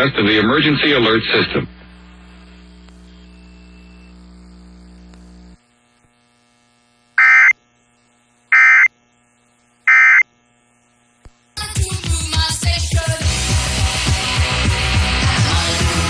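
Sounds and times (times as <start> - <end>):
digital data bursts: 7.2 - 7.6, 8.5 - 8.9, 9.9 - 10.3
rock music: 12.8 - 16.0.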